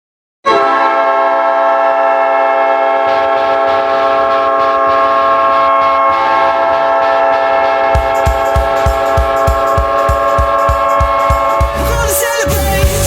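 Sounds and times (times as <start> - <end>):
goal horn blaring: 0.4 - 12.9
kick drum beat: 8.0 - 12.2.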